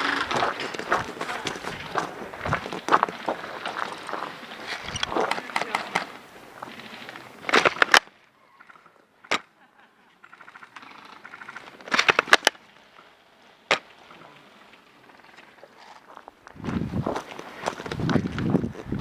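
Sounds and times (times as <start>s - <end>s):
airsoft guns firing: 5.2s - 6.2s.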